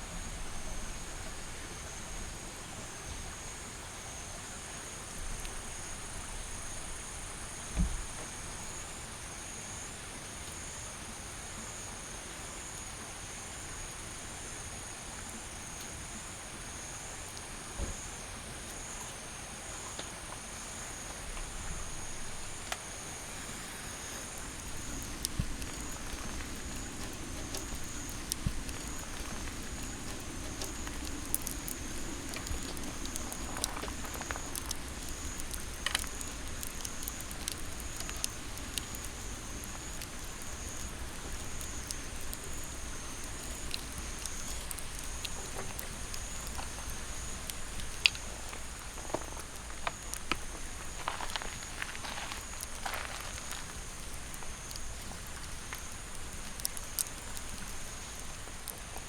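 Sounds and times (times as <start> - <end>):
stream rushing: 19.2 - 59.0
light ticks and clicks: 24.3 - 59.0.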